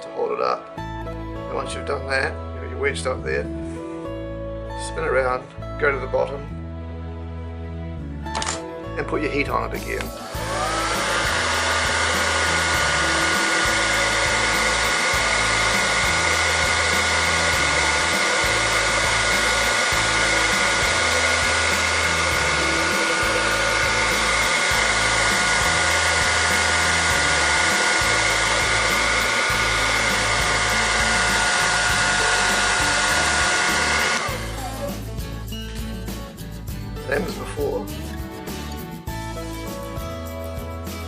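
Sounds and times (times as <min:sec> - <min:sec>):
hairdryer running with high whine: 0:09.8 - 0:35.1.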